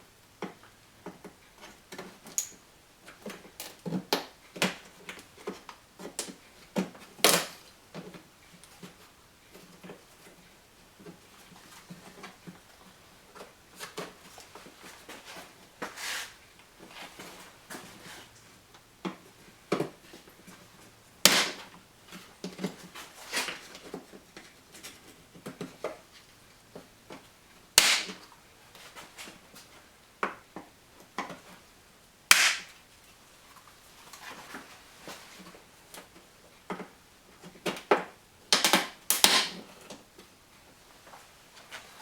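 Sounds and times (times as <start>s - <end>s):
plastic clips snapping: 38.6s - 39.6s.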